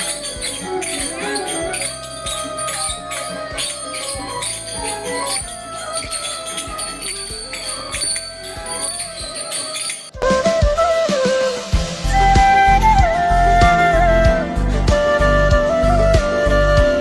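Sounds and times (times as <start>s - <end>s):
held melodic tones: 0.0s - 10.2s
high jingling: 0.0s - 10.2s
percussive beat: 0.0s - 10.2s.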